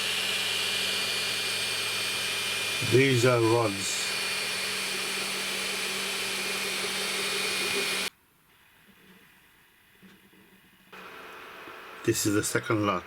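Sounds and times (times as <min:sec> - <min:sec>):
printer fans whirring: 0:00.0 - 0:08.1.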